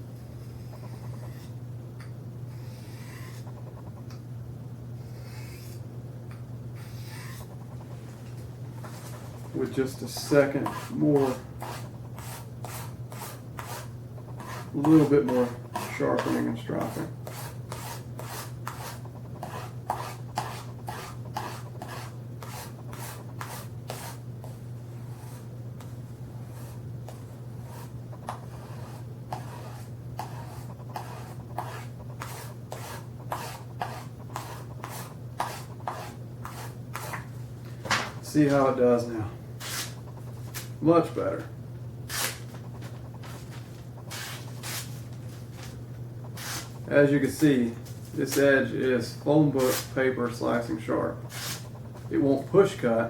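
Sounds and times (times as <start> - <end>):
steady low hum: 0.0 - 53.0
knife scraping on a sharpener: 2.5 - 4.0, 5.0 - 5.8, 6.8 - 7.8, 10.2 - 24.2, 27.7 - 37.2, 39.6 - 40.7, 46.2 - 46.8, 51.2 - 52.1
knife scraping on sharpening surface: 39.6 - 40.7, 46.3 - 46.8, 51.2 - 52.1.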